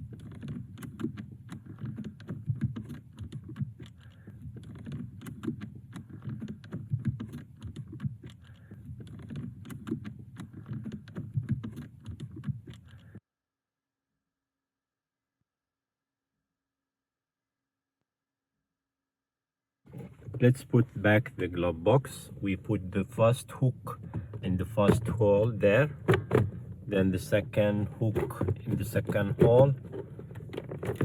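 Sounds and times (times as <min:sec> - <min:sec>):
rapid clicking and rattling: 0:00.0 - 0:13.2, 0:23.8 - 0:31.0.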